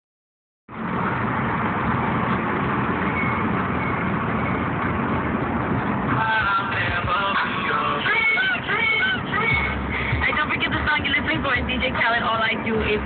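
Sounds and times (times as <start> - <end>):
car engine and road noise: 0.7 - 13.0
faint radio music: 10.2 - 13.0.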